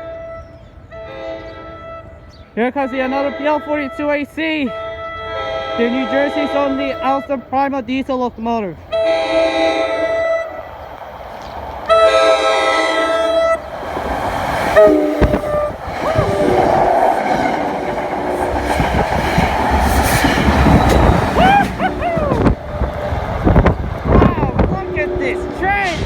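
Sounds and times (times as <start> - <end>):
train horn blasts: 0.0 - 7.6, 8.9 - 10.7, 11.8 - 13.7, 14.7 - 18.6, 23.6 - 26.0
train rumbling past: 0.0 - 26.0.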